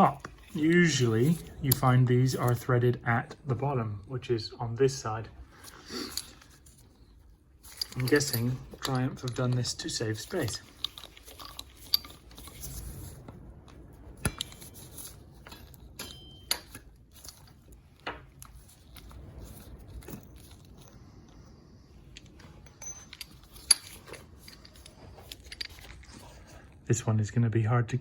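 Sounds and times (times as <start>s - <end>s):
metallic clinks of hand tools: 7.7s - 12.2s, 22.7s - 24.0s.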